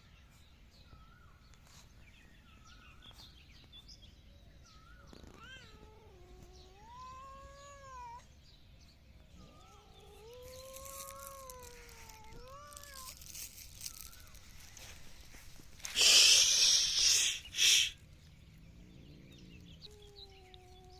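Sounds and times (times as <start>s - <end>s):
cat meowing: 5.2s - 8.3s, 9.6s - 13.2s.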